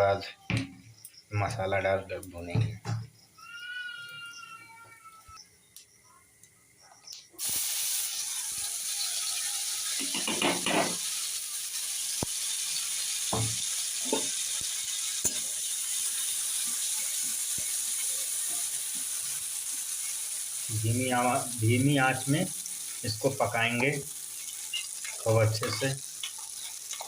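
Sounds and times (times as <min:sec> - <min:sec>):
paste sizzling in hot oil: 0:07.4 - 0:27.0.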